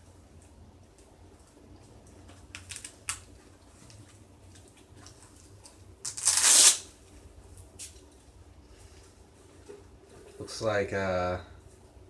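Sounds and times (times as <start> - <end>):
loud rip or crinkle: 2.6 - 3.3, 6.0 - 6.9.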